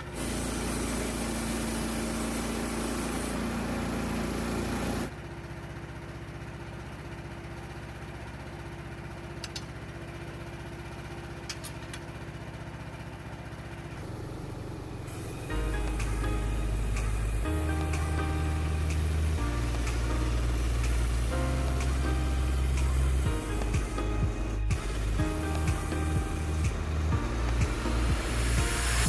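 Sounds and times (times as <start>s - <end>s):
small gasoline engine running: 0.0s - 29.0s.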